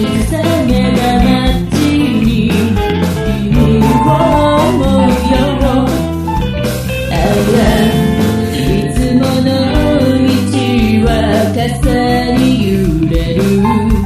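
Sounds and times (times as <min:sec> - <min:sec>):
rock band music: 0:00.0 - 0:14.0
bending melody line: 0:03.4 - 0:06.5, 0:07.1 - 0:11.7.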